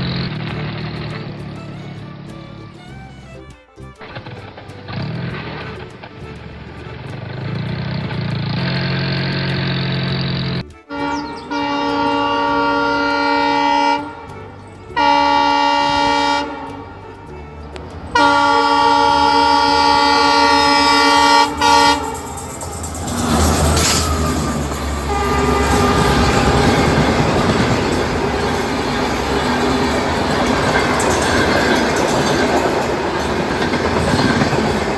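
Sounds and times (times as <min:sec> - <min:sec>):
low train rumble: 0:00.0 - 0:34.9
train horn blasts: 0:07.9 - 0:34.9.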